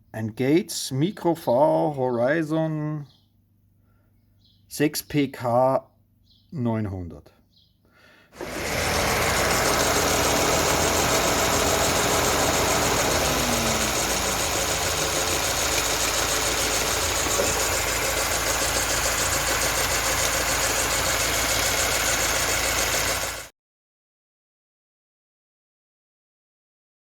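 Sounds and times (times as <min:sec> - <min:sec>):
car engine idling: 0:08.4 - 0:23.5.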